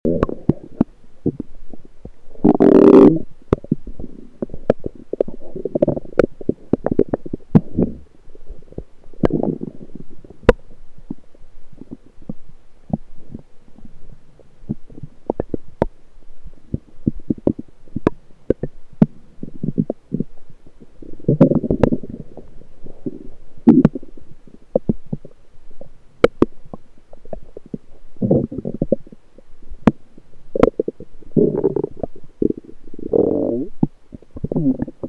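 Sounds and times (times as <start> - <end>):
intestinal gurgling: 2.3 - 10.4, 21.0 - 26.4, 27.1 - 29.2, 30.5 - 35.0
little pops and clicks: 26.2 - 26.6.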